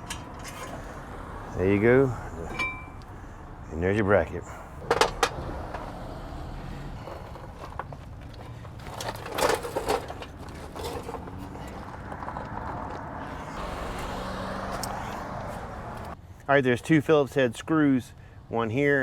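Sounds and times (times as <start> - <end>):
metal tools clanking: 0.0 - 1.0, 2.4 - 3.1, 4.5 - 5.8, 7.0 - 12.8.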